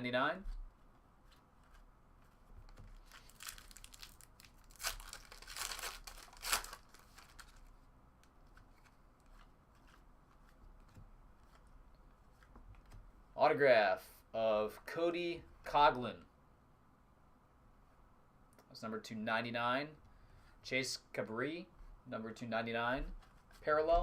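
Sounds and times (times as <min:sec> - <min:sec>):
card packaging crinkling: 0:02.7 - 0:07.7.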